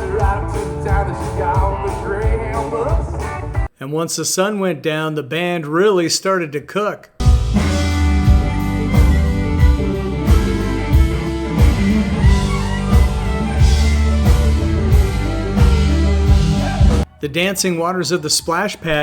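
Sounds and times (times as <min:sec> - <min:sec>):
bass guitar: 0:00.0 - 0:03.7, 0:07.2 - 0:17.1
drum kit beat: 0:00.0 - 0:03.7, 0:07.2 - 0:17.1
electric guitar: 0:00.0 - 0:03.7, 0:07.2 - 0:17.0.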